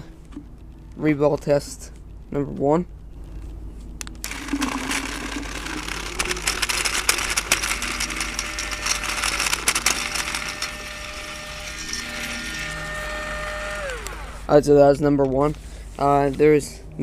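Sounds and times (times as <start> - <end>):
balls rattling through a loader: 4.2 - 14.1
steady motor whine: 4.2 - 14.7.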